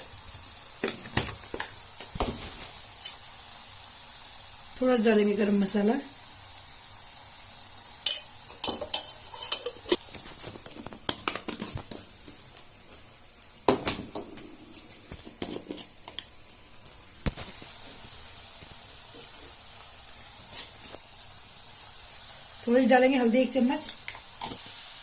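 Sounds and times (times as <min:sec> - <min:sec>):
oil sizzling: 0:00.0 - 0:25.0
spoon scraping iron pan: 0:08.1 - 0:10.0, 0:15.2 - 0:16.2.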